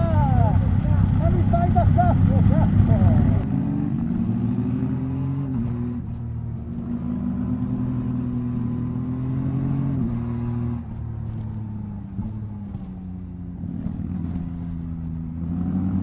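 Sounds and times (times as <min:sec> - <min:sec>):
motorcycle engine running: 0:00.0 - 0:03.5.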